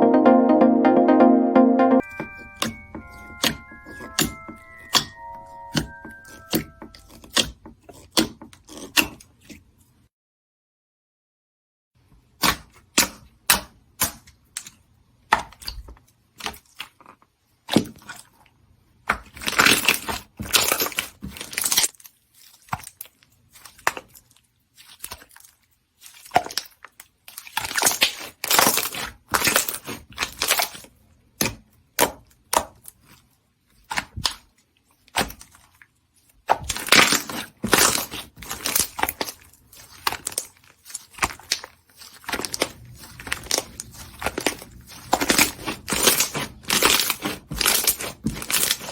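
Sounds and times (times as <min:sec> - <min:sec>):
slime squishing: 0:19.1 - 0:48.9.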